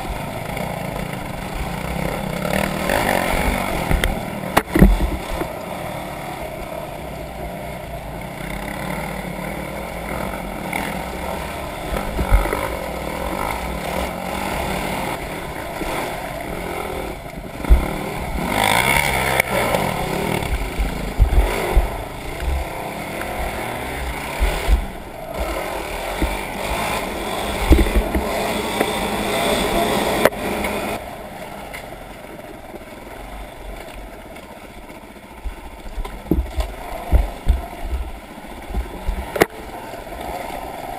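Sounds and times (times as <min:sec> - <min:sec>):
off-road vehicle engine running: 0:00.0 - 0:40.9
low thumps: 0:17.6 - 0:18.5, 0:20.0 - 0:26.9, 0:27.6 - 0:28.4, 0:35.4 - 0:39.3.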